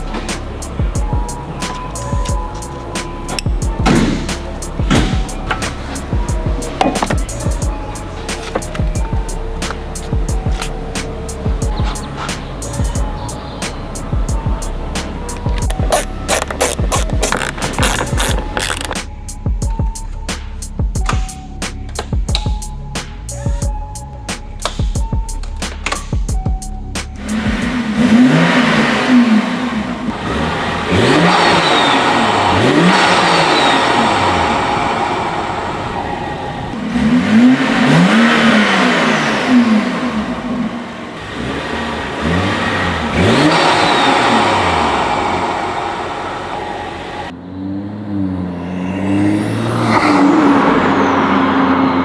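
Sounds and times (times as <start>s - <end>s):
car engine revving: 0.0s - 52.0s
intake rush: 0.0s - 52.0s.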